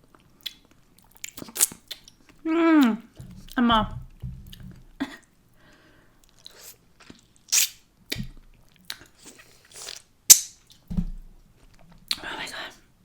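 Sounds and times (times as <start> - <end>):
chewing and wet mouth noises: 0.0 - 3.6, 6.2 - 10.8
hissing eating sounds: 7.5 - 7.8.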